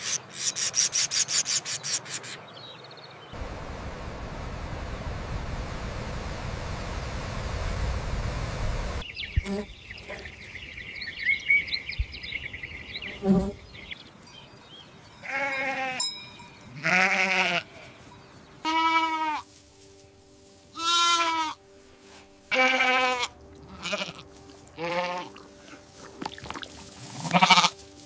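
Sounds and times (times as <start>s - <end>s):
steady rushing noise: 3.4s - 9.0s
farm animals bleating: 15.2s - 19.5s, 20.7s - 21.6s, 22.5s - 25.8s, 27.1s - 27.9s.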